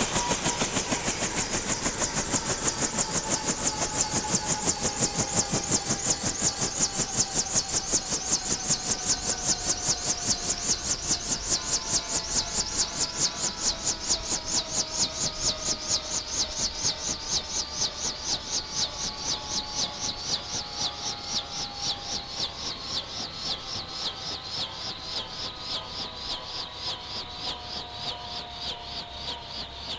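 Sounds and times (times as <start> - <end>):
helicopter rotor swishing: 0.0 - 19.4
turbine whine: 0.0 - 29.9.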